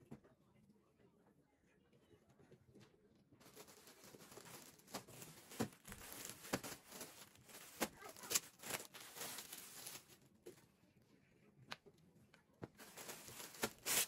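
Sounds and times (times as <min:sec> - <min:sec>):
rustling and crinkling: 0:03.4 - 0:10.8, 0:12.6 - 0:14.0.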